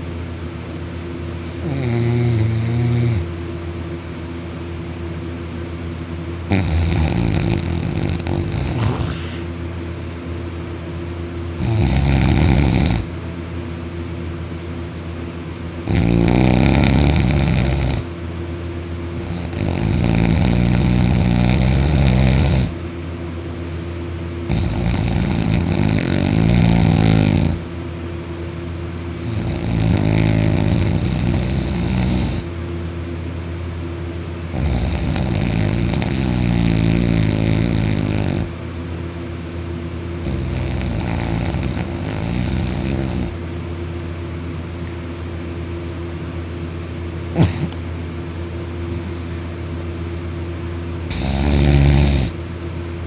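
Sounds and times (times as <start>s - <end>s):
man snoring loudly: 1.5s - 3.3s, 6.5s - 9.5s, 11.6s - 13.1s, 15.8s - 18.1s, 19.1s - 22.8s, 24.5s - 27.6s, 29.2s - 32.5s, 34.5s - 38.5s, 40.2s - 43.4s, 47.4s - 47.8s, 51.1s - 52.4s.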